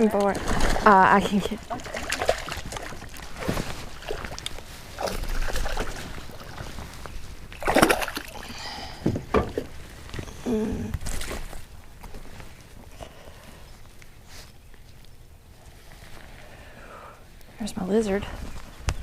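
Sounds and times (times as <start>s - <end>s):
water splashing around a boat: 0.0s - 10.1s.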